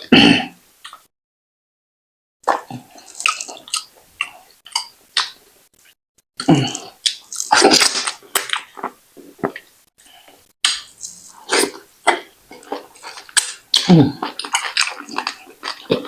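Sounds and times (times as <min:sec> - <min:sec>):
person chewing wet food: 0:02.4 - 0:05.4, 0:06.4 - 0:16.0.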